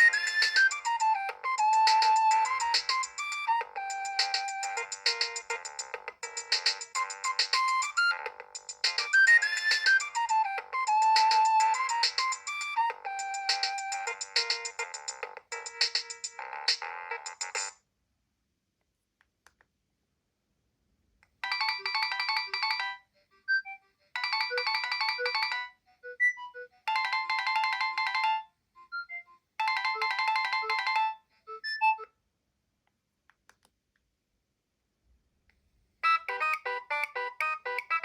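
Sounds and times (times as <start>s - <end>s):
polyphonic phone ringtone: 0.0s - 17.8s, 21.4s - 32.0s, 36.0s - 38.0s.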